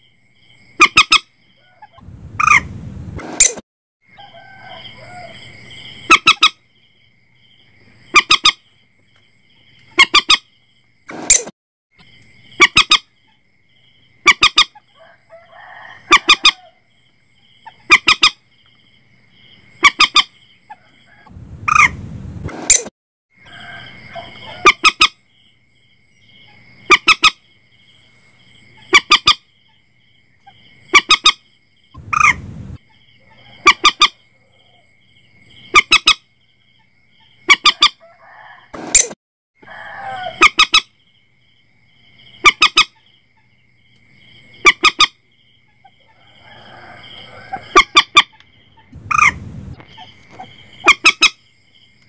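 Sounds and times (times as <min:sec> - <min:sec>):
moorhen honking calls: 0:06.1 - 0:06.6, 0:24.2 - 0:25.2, 0:32.0 - 0:32.4, 0:33.4 - 0:34.2.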